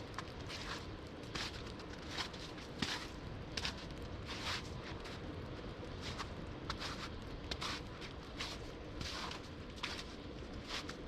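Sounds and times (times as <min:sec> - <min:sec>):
steady low rumble: 0:00.0 - 0:11.0
footsteps crunching in snow: 0:08.4 - 0:11.0.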